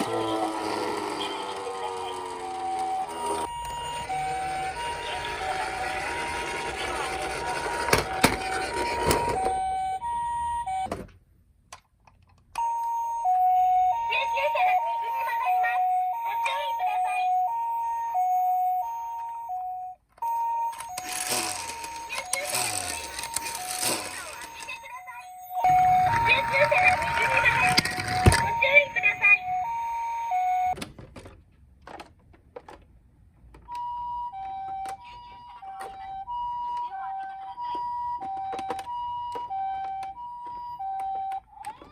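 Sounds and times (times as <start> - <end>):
toy two-tone electronic siren: 0.0 - 11.0, 12.6 - 30.8, 33.7 - 41.9
clicks: 25.5 - 30.8
plastic toy clicks and knocks: 37.7 - 41.9.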